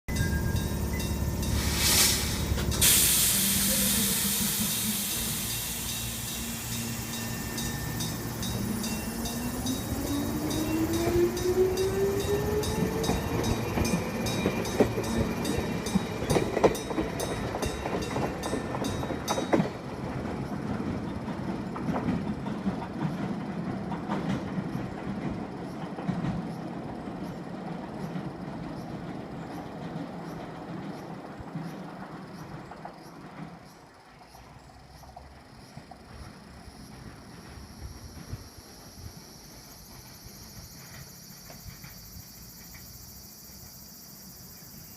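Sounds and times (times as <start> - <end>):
electric bell ringing: 0.1 - 2.0, 5.8 - 13.7
train motor whine: 0.1 - 16.5
train wheels knocking on rail joints: 5.1 - 43.1.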